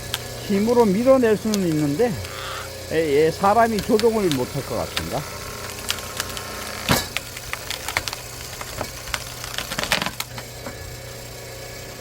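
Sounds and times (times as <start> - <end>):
log splitter power unit humming: 0.0 - 12.0
wood cracking and splintering: 3.5 - 10.5.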